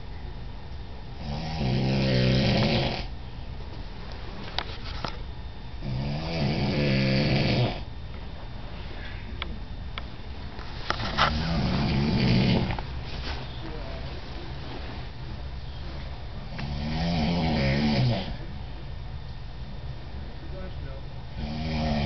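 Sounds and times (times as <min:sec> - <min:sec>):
man snoring: 0:01.2 - 0:03.1, 0:05.8 - 0:07.8, 0:11.3 - 0:12.8, 0:16.5 - 0:18.4, 0:21.3 - 0:22.0.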